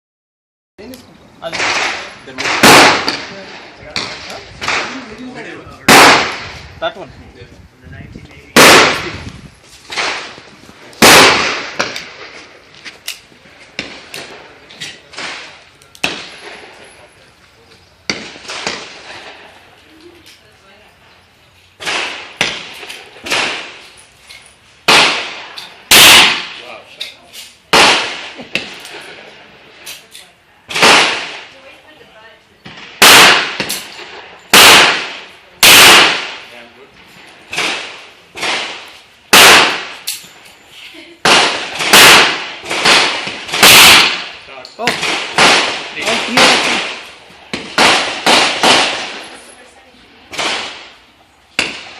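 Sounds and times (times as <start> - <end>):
revolver gunshot with echo: 1.4 - 5.1, 5.8 - 6.6, 8.5 - 9.2, 11.0 - 12.4, 24.9 - 26.8, 27.7 - 29.2, 30.7 - 31.5, 32.7 - 36.6, 37.5 - 40.0, 41.2 - 49.3, 50.3 - 51.0.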